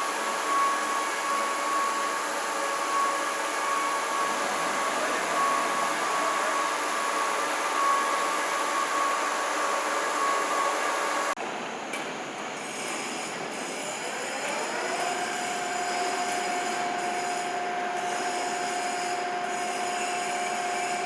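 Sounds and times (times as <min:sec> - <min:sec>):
high machine whine: 0:00.0 - 0:11.4.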